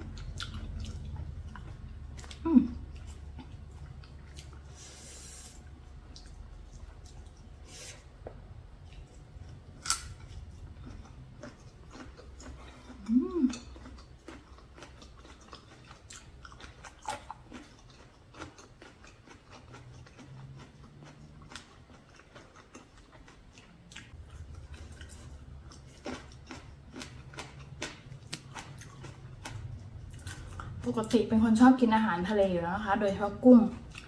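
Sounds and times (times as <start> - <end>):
chewing food: 0.0 - 4.8, 5.6 - 7.6, 8.8 - 31.2, 33.2 - 34.0
person humming mm: 2.4 - 2.8, 13.0 - 13.7.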